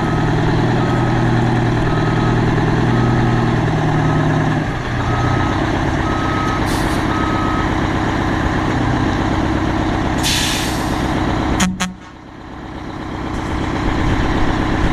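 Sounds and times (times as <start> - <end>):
reversing beeper: 0.0 - 4.4, 5.0 - 7.7, 11.6 - 12.0
diesel truck running: 0.0 - 14.9
air hiss: 10.2 - 11.1.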